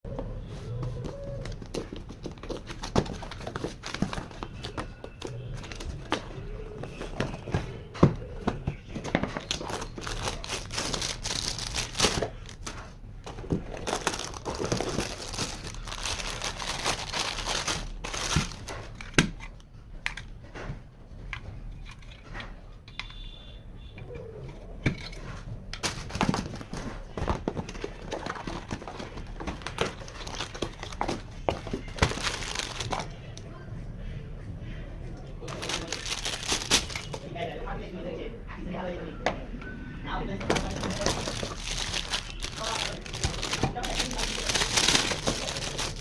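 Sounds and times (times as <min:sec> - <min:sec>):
plastic and cardboard crinkling: 0:00.7 - 0:20.7, 0:25.0 - 0:33.4, 0:35.4 - 0:37.3, 0:40.4 - 0:46.0.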